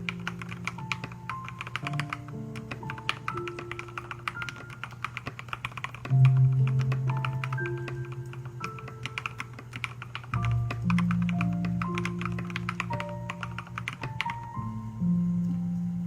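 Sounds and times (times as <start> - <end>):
mechanical keyboard typing: 0.0 - 14.6.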